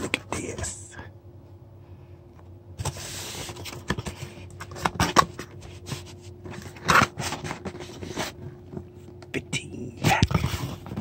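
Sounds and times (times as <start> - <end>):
cardboard rustling: 2.8 - 8.9.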